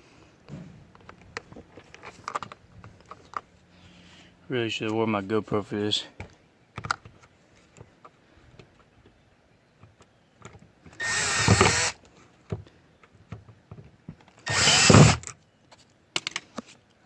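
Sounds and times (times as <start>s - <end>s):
cordless drill driving screws: 11.0s - 12.0s, 14.4s - 15.3s.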